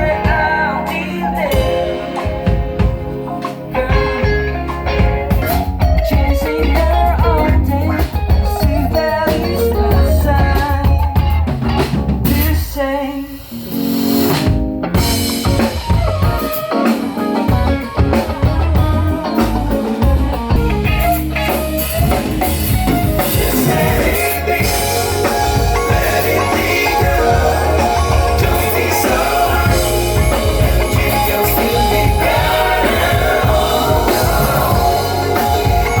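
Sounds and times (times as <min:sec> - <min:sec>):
person singing: 0:00.0 - 0:04.8, 0:05.4 - 0:11.3, 0:22.8 - 0:36.0
live rock band playing: 0:00.0 - 0:36.0.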